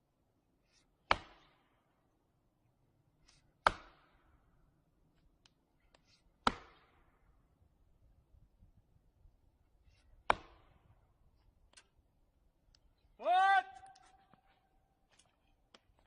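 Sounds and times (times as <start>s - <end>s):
axe chopping wood: 1.0s - 1.7s, 3.6s - 4.2s, 6.4s - 7.0s, 10.2s - 10.9s.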